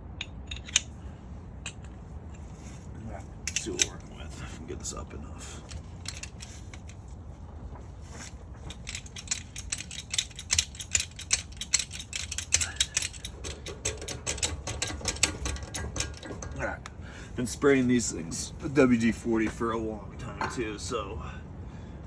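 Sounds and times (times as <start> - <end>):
hand tools ratcheting clicks: 0.0 - 0.9, 3.5 - 4.0, 5.6 - 7.0, 8.7 - 16.7
low steady hum: 0.0 - 22.0.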